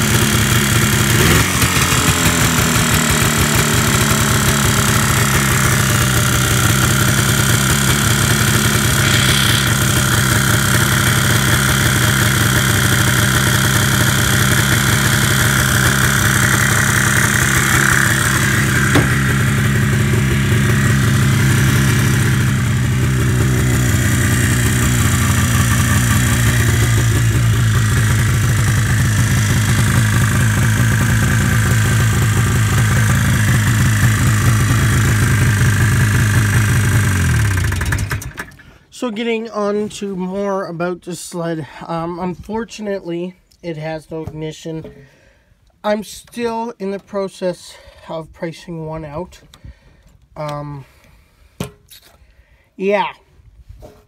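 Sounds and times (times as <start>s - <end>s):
snowmobile engine idling: 0.0s - 38.6s.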